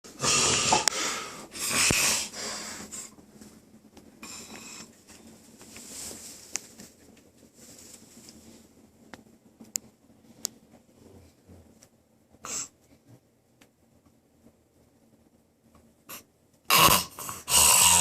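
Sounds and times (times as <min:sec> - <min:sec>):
man snoring: 0:00.1 - 0:02.6, 0:16.7 - 0:18.0
quiet breathing: 0:00.1 - 0:06.8.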